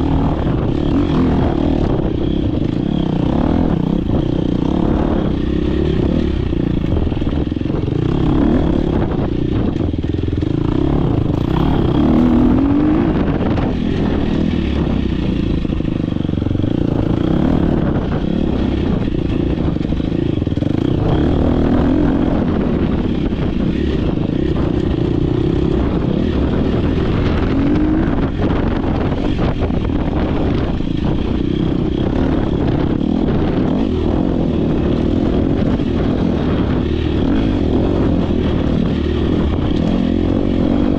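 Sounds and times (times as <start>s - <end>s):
dirt bike engine revving: 0.0s - 40.9s.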